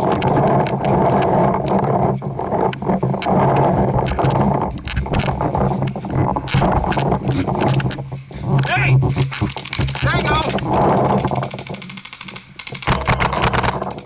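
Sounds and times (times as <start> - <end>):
loud steady rushing noise: 5.4 - 13.2.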